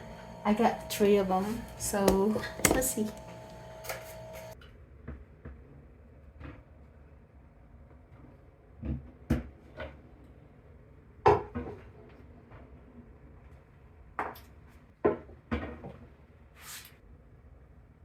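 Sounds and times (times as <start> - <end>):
hard objects knocking: 1.6 - 4.5.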